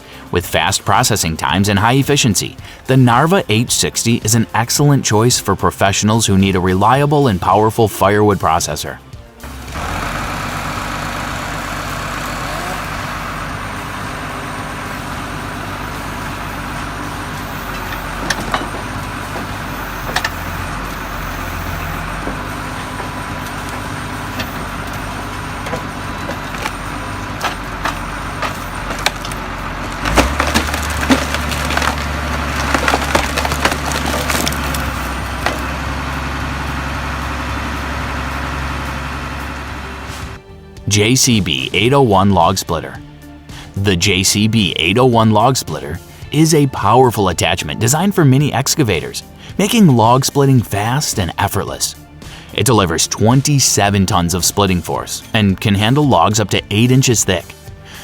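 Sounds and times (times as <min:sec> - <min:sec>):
engine and hydraulics running: 0:00.0 - 0:58.0
logs cracking as cut and split: 0:13.3 - 0:37.0.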